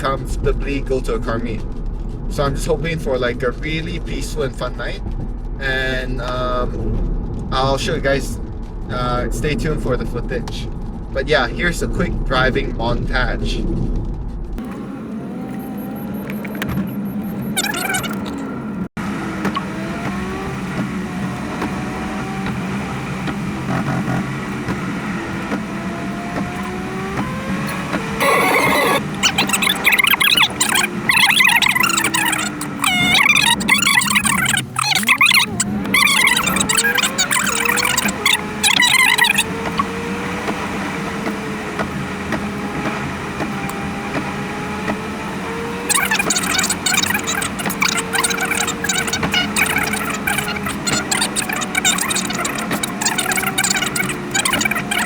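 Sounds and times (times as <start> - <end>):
car engine accelerating: 14.0 - 55.0
road noise: 14.6 - 55.0.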